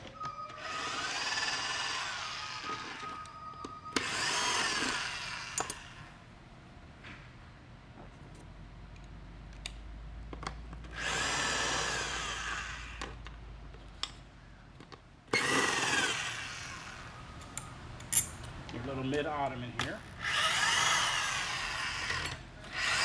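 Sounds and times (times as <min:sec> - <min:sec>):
power drill running: 0:00.6 - 0:03.3, 0:03.9 - 0:06.2, 0:10.9 - 0:13.1, 0:15.3 - 0:17.3, 0:20.0 - 0:23.0.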